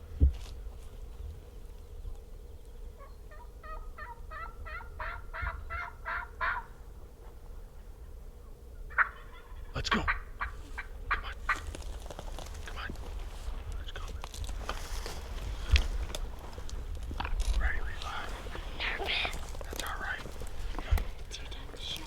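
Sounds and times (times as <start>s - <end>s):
turkey yelping: 3.0s - 7.4s, 8.9s - 11.7s
turkey gobble: 3.0s - 8.2s, 8.9s - 11.7s.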